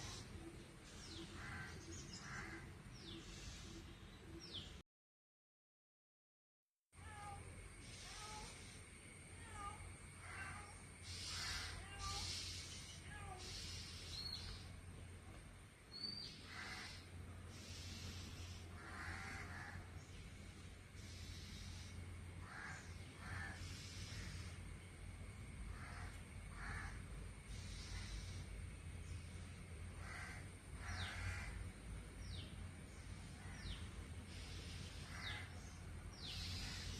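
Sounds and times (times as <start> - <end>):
harsh rasping bird calls: 0.0 - 4.7, 7.8 - 8.7, 9.4 - 14.8, 15.9 - 20.2, 20.9 - 24.8, 25.5 - 29.2, 29.9 - 36.9
steady low rumble: 13.7 - 36.9.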